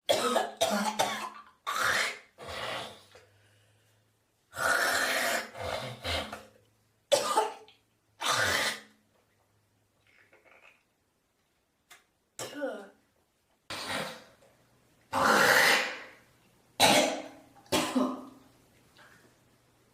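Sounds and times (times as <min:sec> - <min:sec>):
person coughing hard: 0:00.1 - 0:01.4, 0:07.1 - 0:07.7, 0:16.8 - 0:18.3
person clearing throat: 0:16.8 - 0:18.4.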